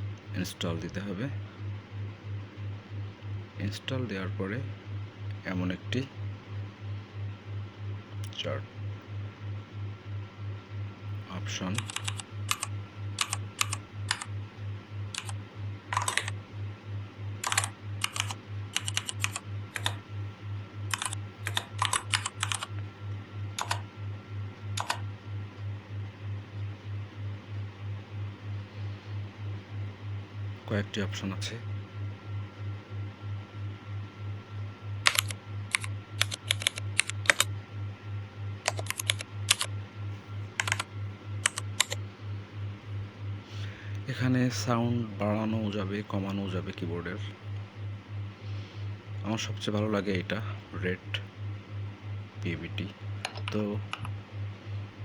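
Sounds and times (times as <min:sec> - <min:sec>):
low pulsing hum: 0:00.0 - 0:55.0
mechanical keyboard clicks: 0:11.7 - 0:14.3, 0:15.1 - 0:16.4, 0:17.4 - 0:20.0, 0:20.9 - 0:22.7, 0:23.6 - 0:23.8, 0:24.8 - 0:25.0, 0:35.1 - 0:37.5, 0:38.7 - 0:39.7, 0:40.6 - 0:42.0.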